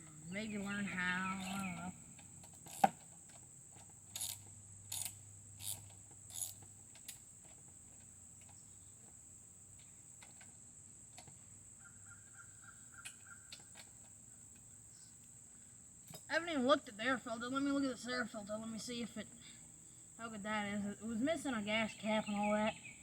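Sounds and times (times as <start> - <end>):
hand tool clicking: 2.2 - 7.2.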